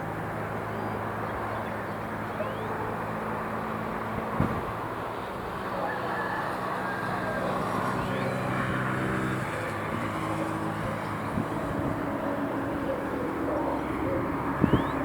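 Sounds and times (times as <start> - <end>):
traffic rumble: 0.0 - 15.0
vehicle engine humming nearby: 0.0 - 15.0
bird chirp: 14.6 - 15.0.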